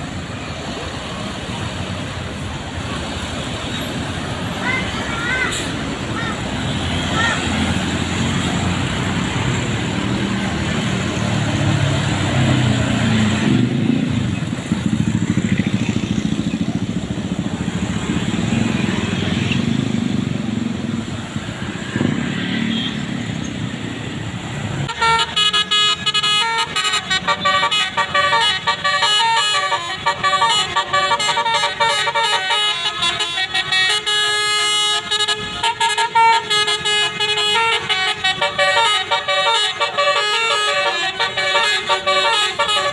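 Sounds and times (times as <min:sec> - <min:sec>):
road traffic rumbling: 0:00.0 - 0:42.9
musical bus air horn: 0:24.8 - 0:42.9.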